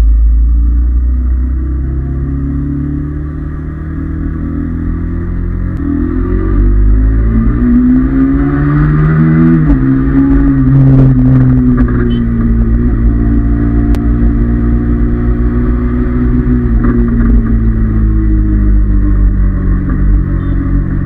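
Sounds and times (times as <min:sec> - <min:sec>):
motorcycle engine running: 0:09.0 - 0:21.0.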